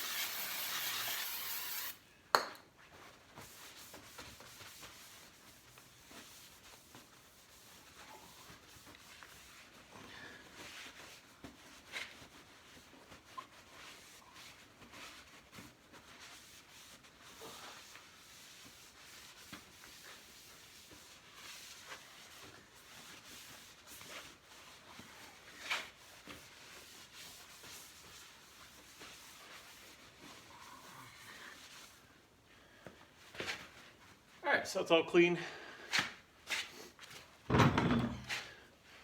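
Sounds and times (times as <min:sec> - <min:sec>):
rag rubbing on metal: 0:00.0 - 0:02.0.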